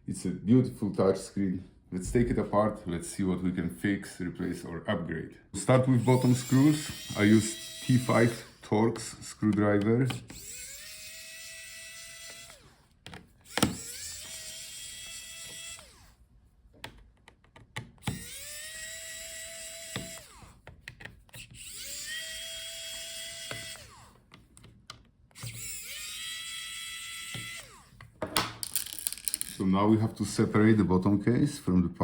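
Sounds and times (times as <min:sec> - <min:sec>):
electric screwdriver whirring: 0:05.9 - 0:08.7, 0:10.1 - 0:16.2, 0:18.0 - 0:20.7, 0:21.3 - 0:24.3, 0:25.3 - 0:28.0.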